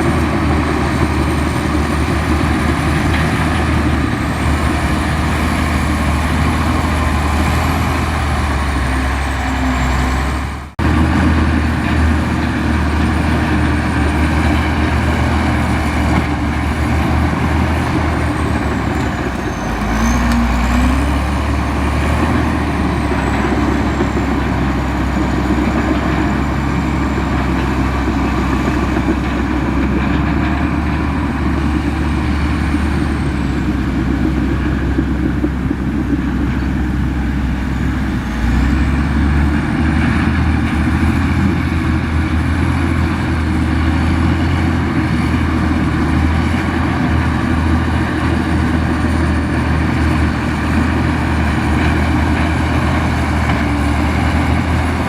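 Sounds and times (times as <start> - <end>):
bulldozer diesel engine drone: 0.0 - 55.0.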